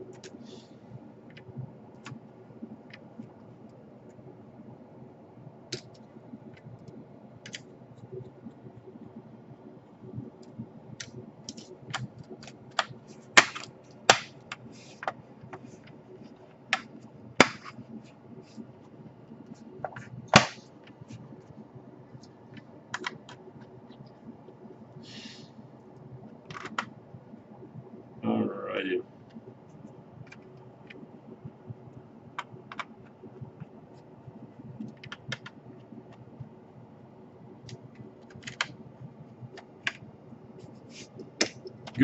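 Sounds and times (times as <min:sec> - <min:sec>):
laptop parts clicking and snapping: 0:05.7 - 0:07.7, 0:11.0 - 0:15.2, 0:22.5 - 0:23.4, 0:32.4 - 0:33.0, 0:34.8 - 0:35.6, 0:37.6 - 0:38.8.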